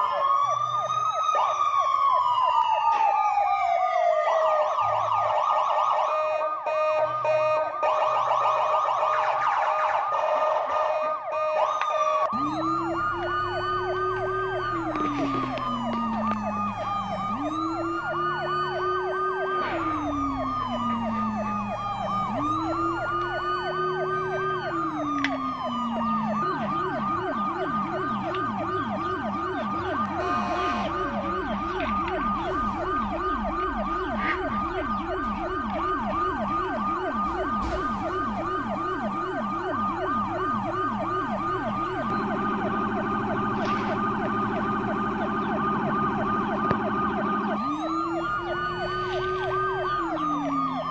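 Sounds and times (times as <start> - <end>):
toy siren rising and falling wail: 0.0 - 50.9
toy siren fast yelp: 30.0 - 32.1.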